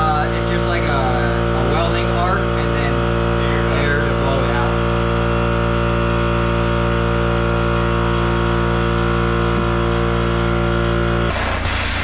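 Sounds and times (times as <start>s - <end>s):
plasma cutter buzzing and hissing: 11.3s - 12.0s.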